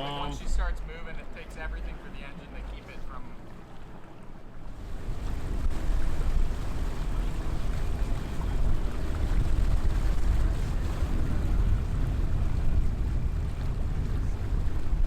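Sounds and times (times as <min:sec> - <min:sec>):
boat engine running: 0:00.0 - 0:15.0
wind rumble on microphone: 0:04.6 - 0:15.0.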